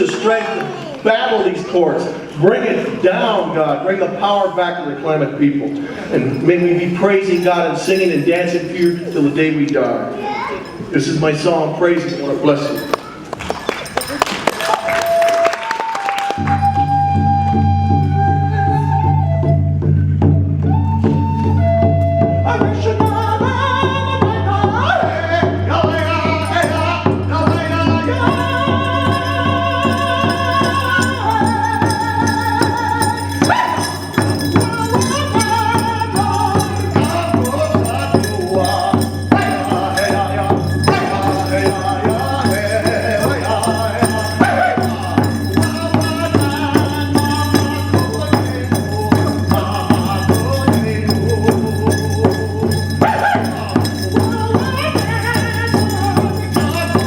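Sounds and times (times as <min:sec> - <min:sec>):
man singing: 0:06.1 - 0:09.9, 0:22.4 - 0:57.0
steady drum beat: 0:24.1 - 0:57.0.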